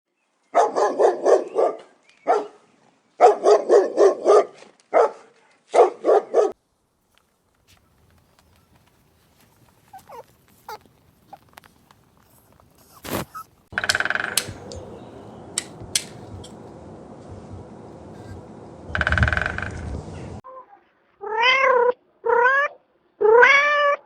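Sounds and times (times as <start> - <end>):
dog barking: 0.5 - 2.6, 3.2 - 6.6.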